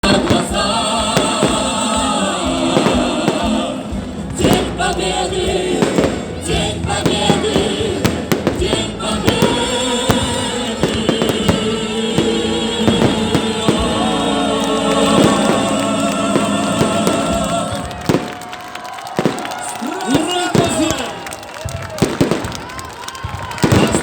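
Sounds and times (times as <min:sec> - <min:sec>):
loud music with singing: 0:00.0 - 0:18.2
fireworks bursting and crackling: 0:00.0 - 0:24.0.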